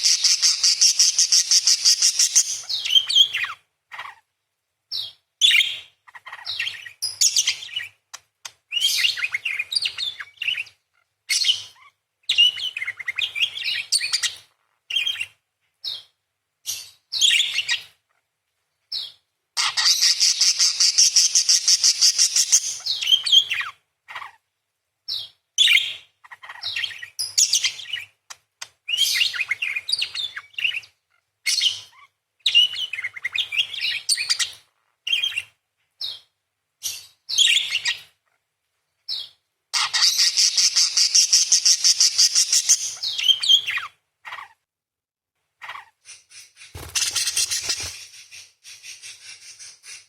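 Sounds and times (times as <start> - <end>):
parakeet chattering trills: 0.0 - 4.2, 19.6 - 24.4, 39.8 - 44.6, 45.6 - 50.0
parakeet chirps and twittering: 0.0 - 4.2, 4.9 - 8.0, 8.7 - 18.0, 18.9 - 24.4, 25.1 - 38.1, 39.1 - 44.6, 45.6 - 50.0.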